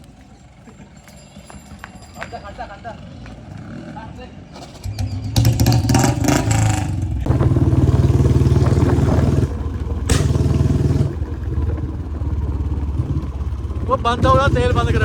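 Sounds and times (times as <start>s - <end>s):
motorcycle engine running: 0.0s - 15.0s
sharp crack: 5.4s - 11.3s.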